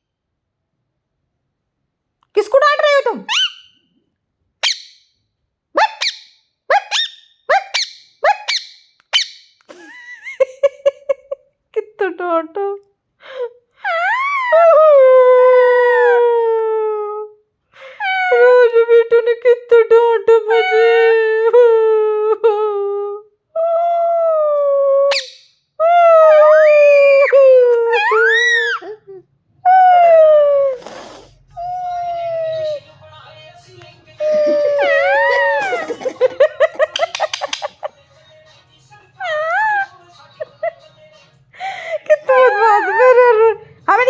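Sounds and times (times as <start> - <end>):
parrot calling: 3.2 - 3.9, 4.6 - 5.1, 5.8 - 9.6, 25.1 - 25.7, 27.9 - 29.0, 34.2 - 37.9, 39.2 - 40.7, 42.3 - 43.4.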